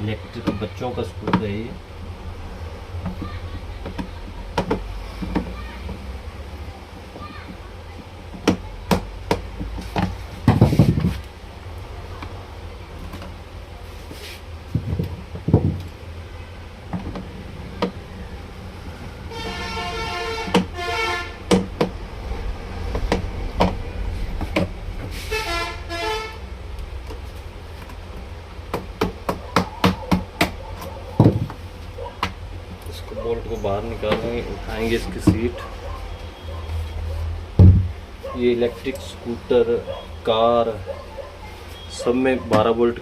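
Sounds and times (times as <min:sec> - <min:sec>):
horn sounding: 0:19.2 - 0:21.6, 0:25.1 - 0:26.5
heavy thump: 0:37.6 - 0:38.0.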